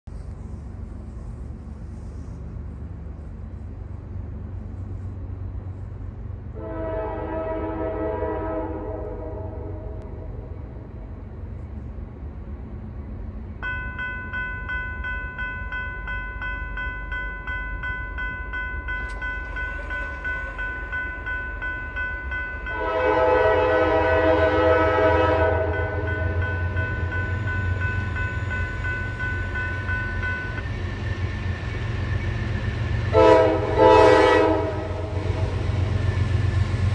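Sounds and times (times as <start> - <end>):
train rumbling: 0.0 - 36.9
locomotive air horn blasts: 6.5 - 10.0, 22.7 - 26.4, 33.1 - 35.6
high ringing tone: 13.6 - 22.9, 25.7 - 30.8.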